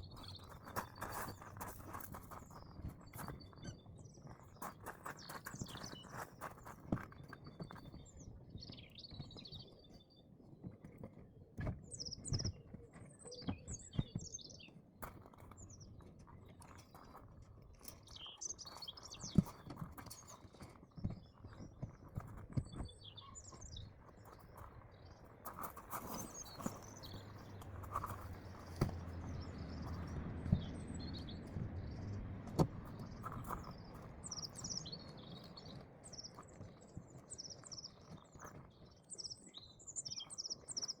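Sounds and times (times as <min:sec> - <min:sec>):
small birds chirping: 0:00.0 - 0:41.0
knocks and thumps of gear: 0:25.5 - 0:34.2.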